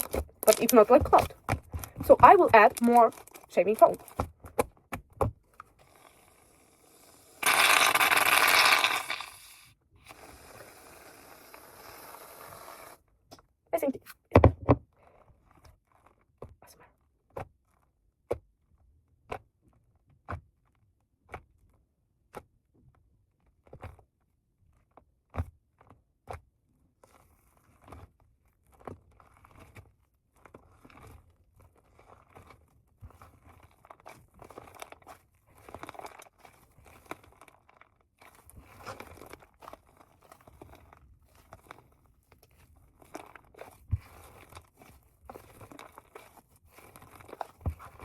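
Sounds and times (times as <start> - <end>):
crunchy slime squishing: 0.0 - 6.4, 7.4 - 12.0, 24.8 - 48.0
slime popping: 7.4 - 9.6.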